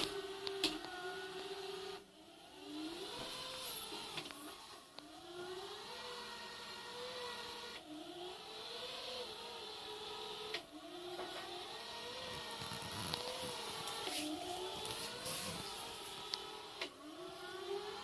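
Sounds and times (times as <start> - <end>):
robot mop motor whine: 0.0 - 18.0.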